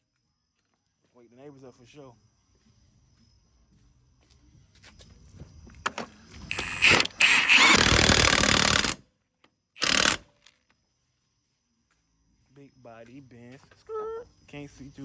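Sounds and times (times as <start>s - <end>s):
impact wrench bursts: 5.9s - 9.0s, 9.8s - 10.4s.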